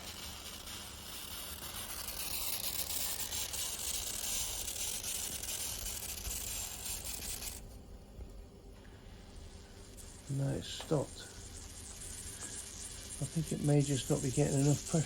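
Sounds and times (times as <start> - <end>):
steam hissing: 0.0 - 7.6, 8.9 - 15.0.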